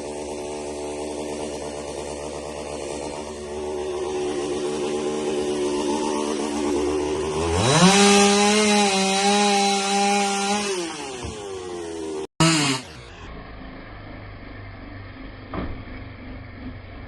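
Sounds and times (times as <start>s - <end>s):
chainsaw revving: 0.0s - 13.3s.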